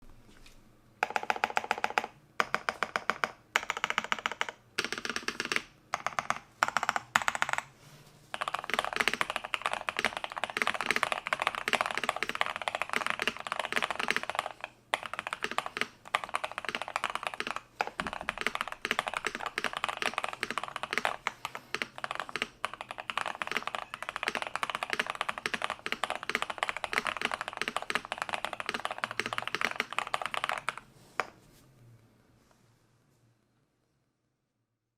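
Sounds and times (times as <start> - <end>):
mechanical keyboard typing: 1.0 - 7.7, 8.3 - 30.8.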